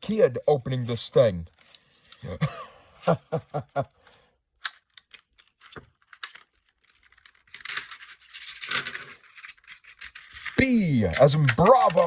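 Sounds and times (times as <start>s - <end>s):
plastic packaging crinkling: 3.6s - 12.0s.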